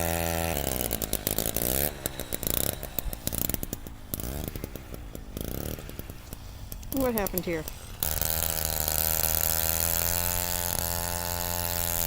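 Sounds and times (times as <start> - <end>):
ice auger motor running: 0.0 - 12.0.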